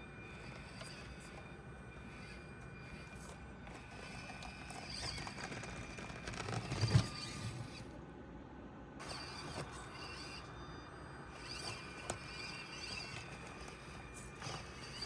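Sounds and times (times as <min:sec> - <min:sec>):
toy truck motor whining: 0:00.0 - 0:08.0, 0:09.0 - 0:15.0
toy truck knocking and clattering: 0:02.2 - 0:07.6, 0:11.3 - 0:15.0.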